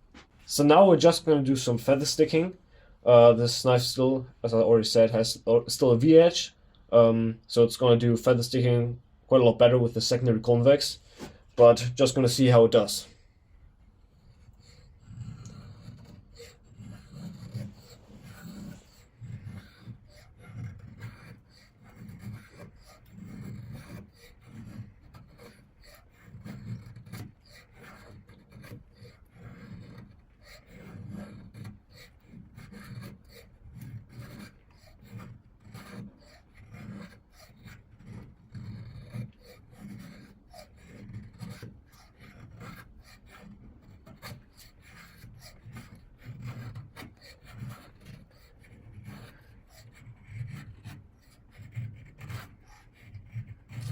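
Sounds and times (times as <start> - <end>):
knife scraping wooden stick: 14.0 - 53.9.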